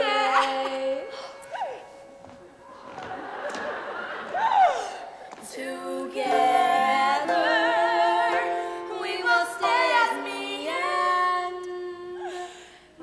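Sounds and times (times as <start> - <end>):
singers in harmony: 0.0 - 2.0, 5.2 - 13.0.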